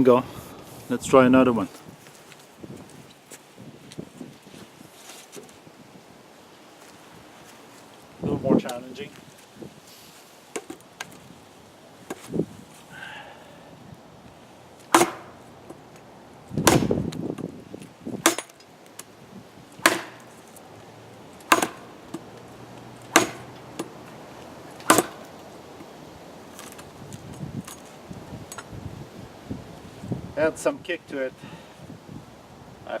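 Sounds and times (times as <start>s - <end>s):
machete chopping wood: 14.9s - 15.4s, 16.6s - 17.0s, 18.2s - 18.6s, 19.8s - 20.3s, 21.5s - 21.9s, 23.1s - 23.9s, 24.8s - 25.3s.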